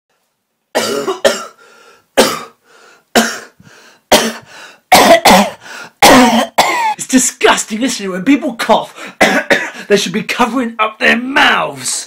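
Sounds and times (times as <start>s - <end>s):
person coughing hard: 0.8s - 1.6s, 2.2s - 7.0s, 9.0s - 9.9s.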